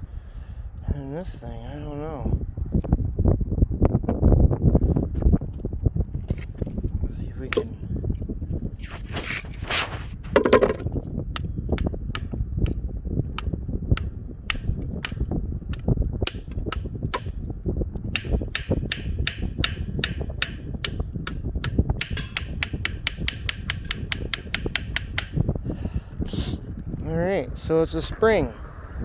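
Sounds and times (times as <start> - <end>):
wind on microphone: 0.0 - 29.0
sharp knocks: 10.3 - 10.9, 16.3 - 17.4, 18.1 - 25.4.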